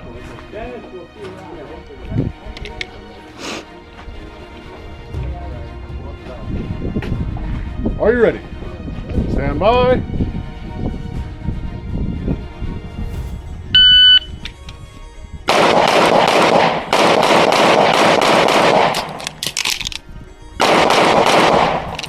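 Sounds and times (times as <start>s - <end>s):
rapid pistol shots: 15.5s - 19.2s, 20.6s - 21.9s.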